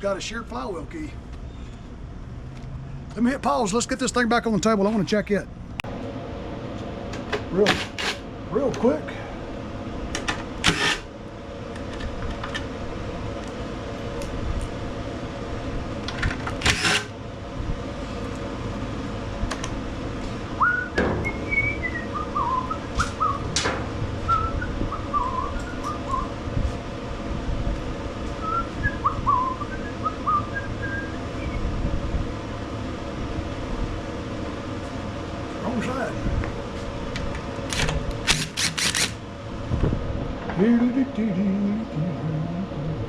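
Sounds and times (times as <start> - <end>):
steady low hum: 0.0 - 43.0
short whistled notes: 20.6 - 23.5.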